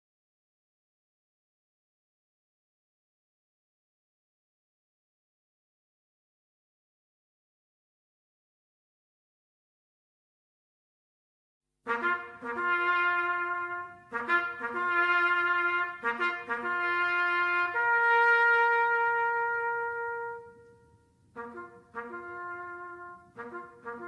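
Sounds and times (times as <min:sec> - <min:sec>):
solo bugle call: 0:11.9 - 0:24.0.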